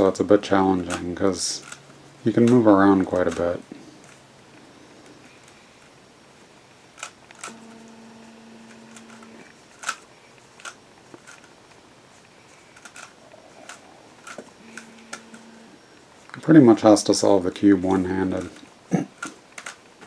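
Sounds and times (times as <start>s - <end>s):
faint steady hum: 0.0s - 20.0s
plastic puzzle cube clicks: 0.9s - 4.2s, 12.8s - 15.4s, 19.2s - 19.8s.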